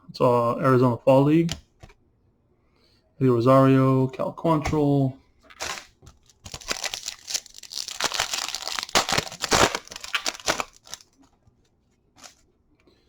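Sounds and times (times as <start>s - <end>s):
foil wrapper crinkling and tearing: 5.5s - 11.2s.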